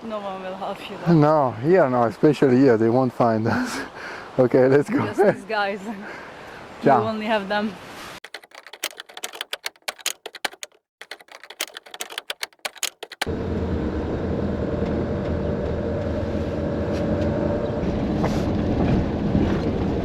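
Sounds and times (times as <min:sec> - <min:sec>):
sharp clicks like typing: 0:08.2 - 0:13.3
van engine and road noise: 0:13.2 - 0:20.0.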